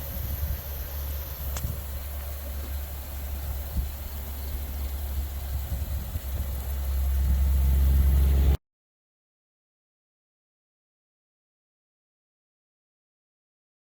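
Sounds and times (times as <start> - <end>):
low steady rumble: 0.0 - 8.6.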